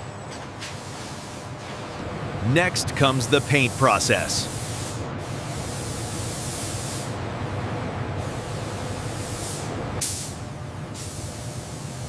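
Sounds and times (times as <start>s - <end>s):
machinery hum: 1.9s - 5.2s
constant hiss: 2.5s - 4.5s.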